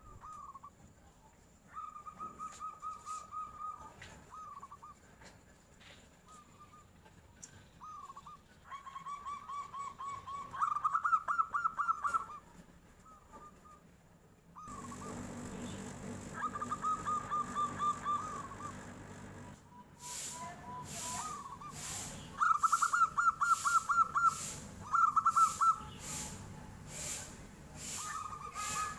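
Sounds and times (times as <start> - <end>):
dove cooing: 1.7 - 5.0, 7.8 - 13.8, 14.6 - 19.6, 20.7 - 28.9.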